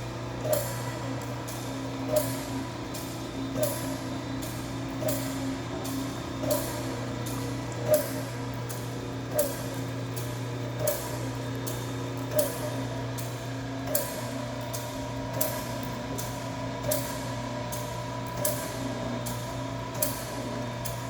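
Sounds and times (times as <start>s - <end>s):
machine humming: 0.0s - 21.0s.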